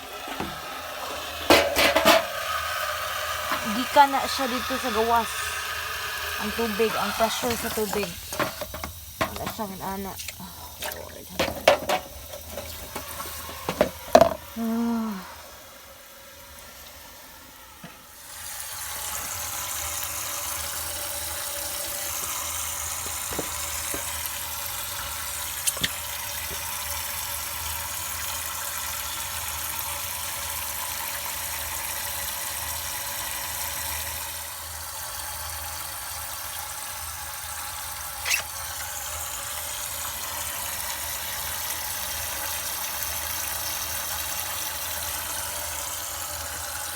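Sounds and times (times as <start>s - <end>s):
water hissing from burst pipe: 0.0s - 46.9s
brief squeal: 38.2s - 38.5s.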